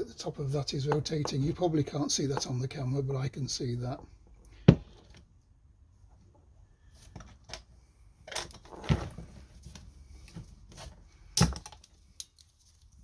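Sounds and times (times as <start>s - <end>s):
locking pliers clicking and creaking: 11.4s - 12.6s.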